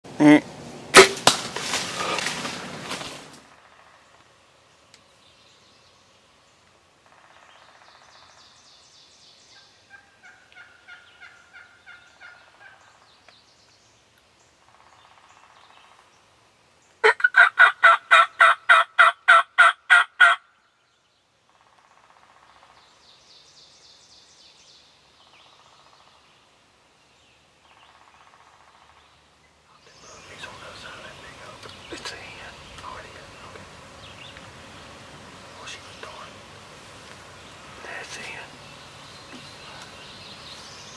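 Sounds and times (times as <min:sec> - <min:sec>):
turkey yelping: 0:17.0 - 0:20.4.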